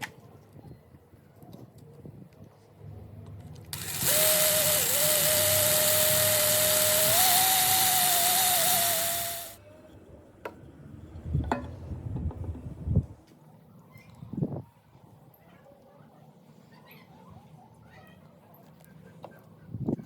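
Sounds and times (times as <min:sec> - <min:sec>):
handheld power tool whining: 0:03.7 - 0:09.6.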